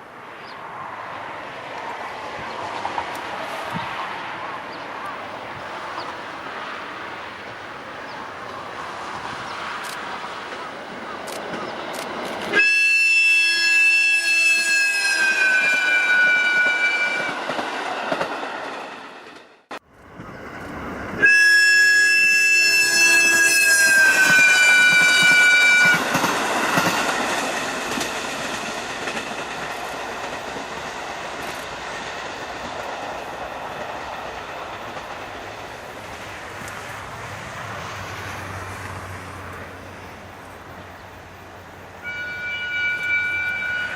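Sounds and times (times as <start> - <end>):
train running on rails: 0.0 - 43.9
train horn blasts: 12.5 - 17.4, 21.2 - 26.2, 42.0 - 43.9.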